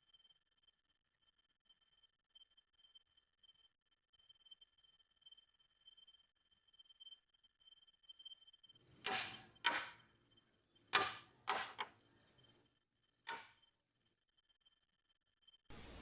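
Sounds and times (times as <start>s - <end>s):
sharp ringing knocks: 9.0s - 10.0s, 11.0s - 12.0s, 13.3s - 13.5s.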